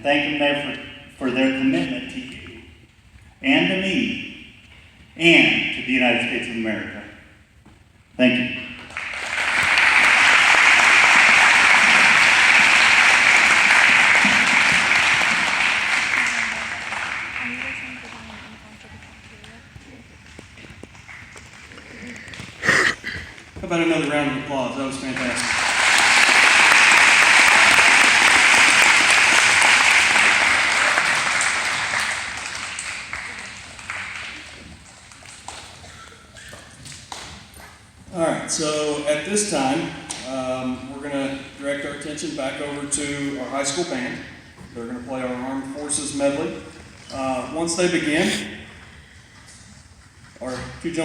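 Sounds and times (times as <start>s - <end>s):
audience applauding: 8.8s - 18.5s, 25.1s - 37.2s.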